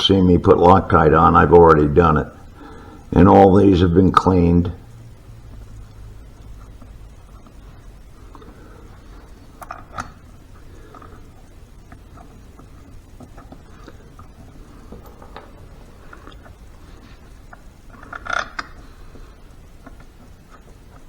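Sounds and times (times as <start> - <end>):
bolts clicking and tapping: 11.9 - 16.7.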